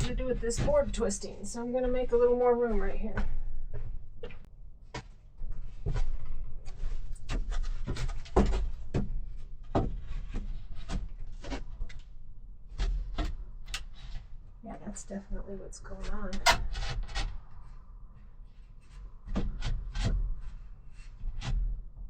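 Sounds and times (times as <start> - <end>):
wooden board knocks and scrapes: 0.0 - 12.1, 12.7 - 14.2, 18.5 - 22.0.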